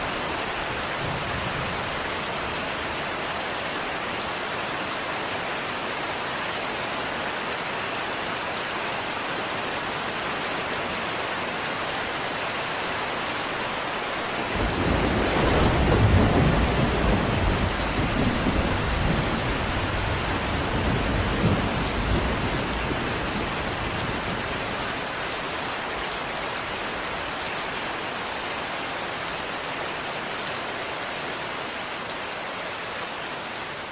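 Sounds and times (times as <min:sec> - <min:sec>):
steady rain: 0:00.0 - 0:33.9
thunder rumbling: 0:14.6 - 0:24.7.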